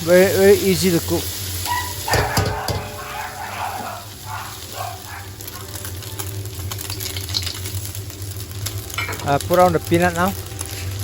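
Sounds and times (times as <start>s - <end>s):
food sizzling in a pan: 0.0s - 11.0s
utensil scraping and tapping pan: 2.1s - 3.1s.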